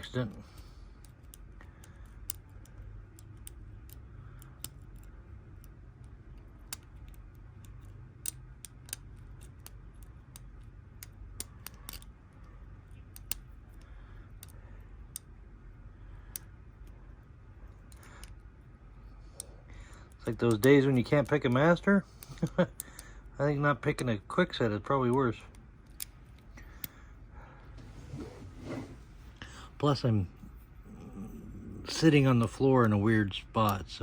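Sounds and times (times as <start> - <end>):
low steady hum: 0.0 - 34.0
lock pick metallic clicks: 6.6 - 12.1.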